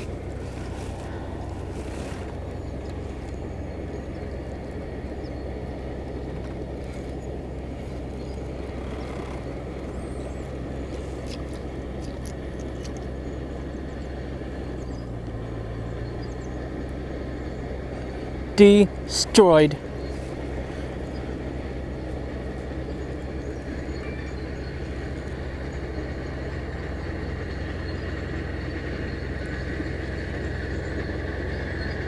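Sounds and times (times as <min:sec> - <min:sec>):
water: 0:00.0 - 0:16.6
boat motor running: 0:00.0 - 0:32.0.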